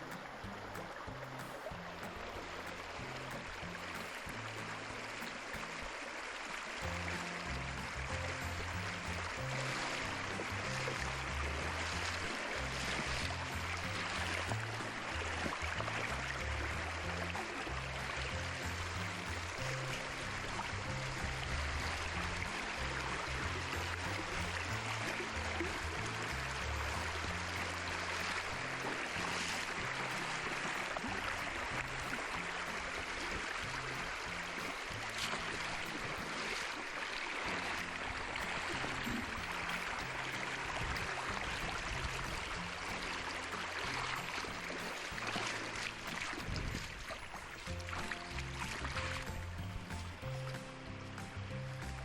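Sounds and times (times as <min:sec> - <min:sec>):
background music: 0:00.0 - 0:06.0, 0:06.8 - 0:36.6, 0:47.6 - 0:52.0
water rushing: 0:00.0 - 0:52.0.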